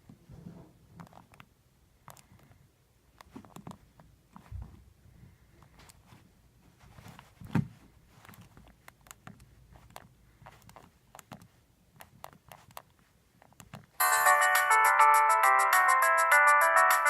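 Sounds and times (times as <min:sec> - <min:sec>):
polyphonic mobile phone ringtone: 0:14.0 - 0:17.0.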